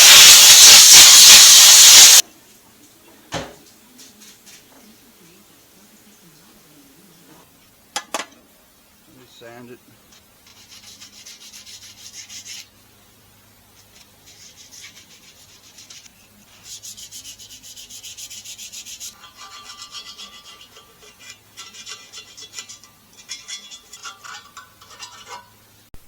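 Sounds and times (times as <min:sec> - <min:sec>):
sandpaper rubbing: 0:00.0 - 0:02.2, 0:10.4 - 0:12.7, 0:13.8 - 0:19.2.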